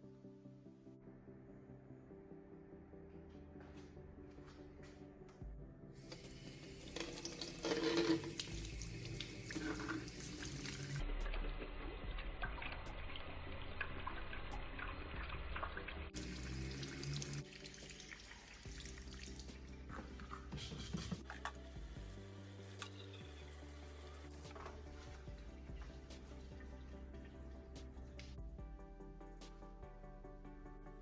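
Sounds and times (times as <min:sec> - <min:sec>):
tap water running into sink: 0:06.0 - 0:21.9.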